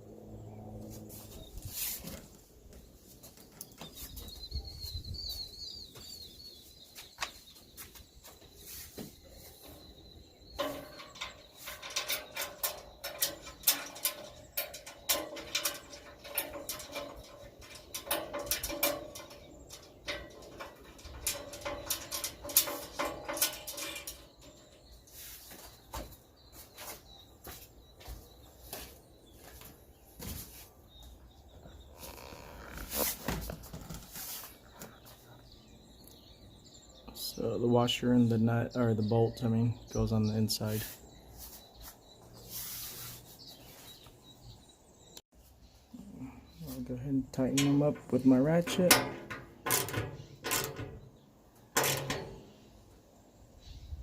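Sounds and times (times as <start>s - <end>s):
metal hardware clicking and clinking: 10.4s - 25.0s, 47.3s - 52.5s.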